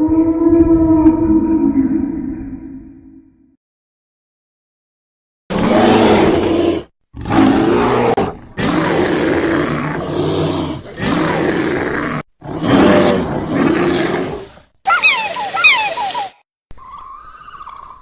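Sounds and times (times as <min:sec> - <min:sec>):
creature growling roars: 0:05.5 - 0:14.6.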